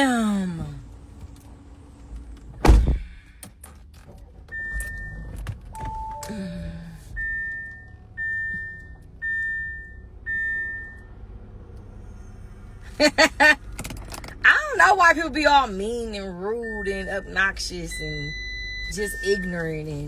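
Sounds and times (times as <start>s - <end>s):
car door shutting: 2.1s - 9.6s, 13.2s - 14.4s
car warning chime beeping: 4.5s - 11.4s, 14.4s - 20.0s.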